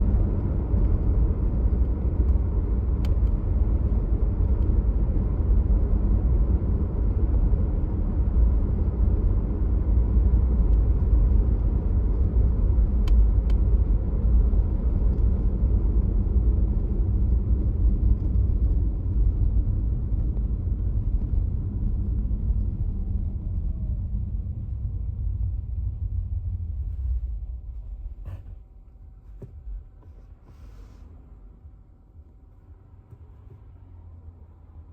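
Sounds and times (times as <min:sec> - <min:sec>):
low road rumble: 0:00.0 - 0:34.9.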